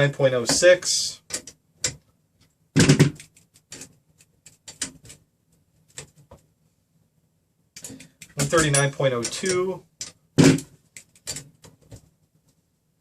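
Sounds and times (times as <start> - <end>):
metal parts clicking and tapping: 7.8 - 10.2, 10.9 - 12.0.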